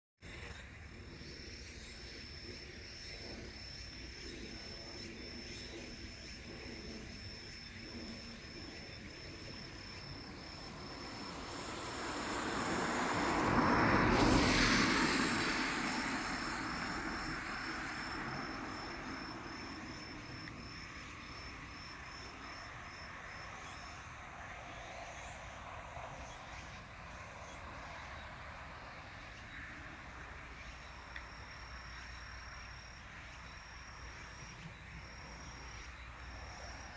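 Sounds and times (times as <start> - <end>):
insects chirping: 0.3 - 36.9
vehicle passing by: 9.7 - 21.7.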